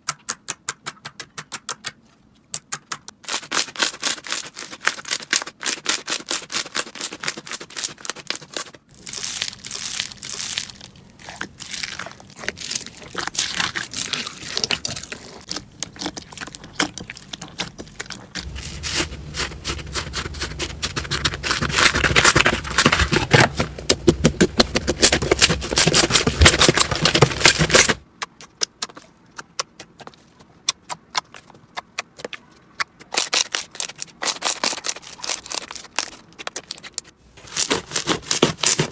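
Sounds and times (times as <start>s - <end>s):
slime crackling and popping: 6.9s - 23.6s.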